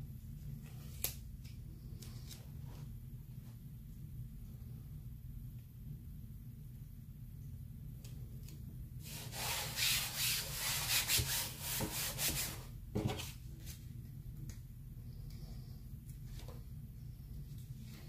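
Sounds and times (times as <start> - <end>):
rubbing against hard surface: 9.1 - 13.3.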